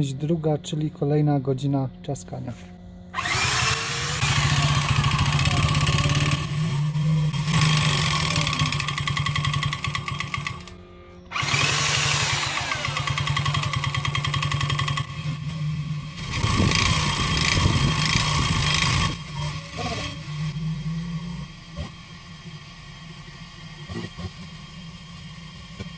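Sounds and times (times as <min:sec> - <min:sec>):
scooter engine knocking: 0:04.2 - 0:10.7, 0:11.4 - 0:15.3.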